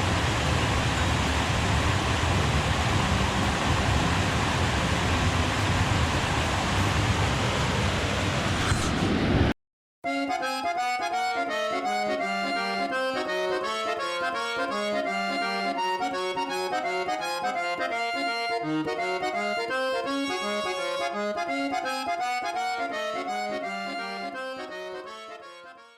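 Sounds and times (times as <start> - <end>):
upbeat instrumental music: 10.0 - 25.9.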